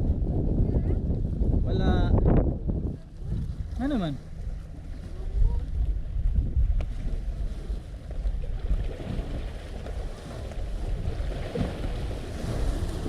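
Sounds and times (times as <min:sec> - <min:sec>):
wind buffeting microphone: 0:00.0 - 0:13.0
sea waves washing on shore: 0:02.9 - 0:13.0.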